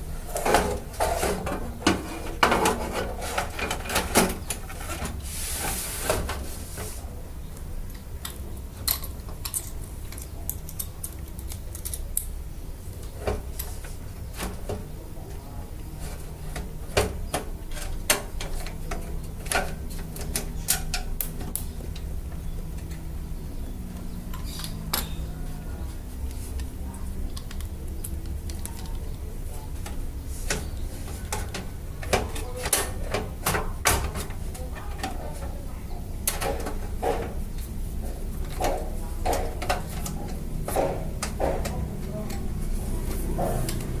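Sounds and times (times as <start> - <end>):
steady low hum: 0.0 - 44.0
metal scrape: 0.2 - 7.0.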